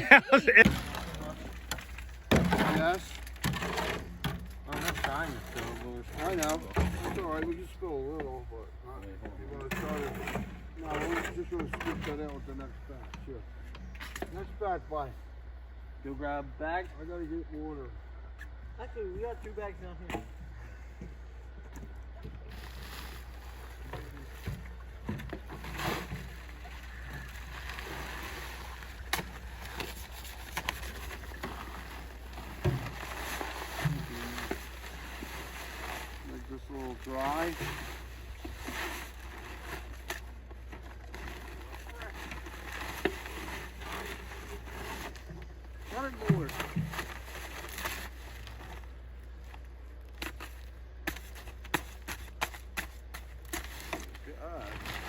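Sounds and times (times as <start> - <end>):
wet concrete sloshing and scraping: 0.0 - 7.8, 9.3 - 13.0, 22.4 - 49.0, 50.0 - 55.0.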